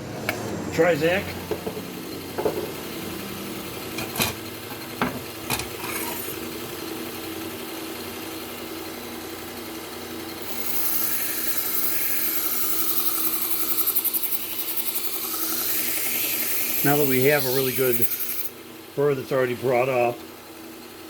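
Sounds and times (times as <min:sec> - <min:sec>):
belt sharpener humming: 0:00.2 - 0:07.7, 0:10.4 - 0:18.6
knife blade hissing on belt: 0:15.1 - 0:18.5.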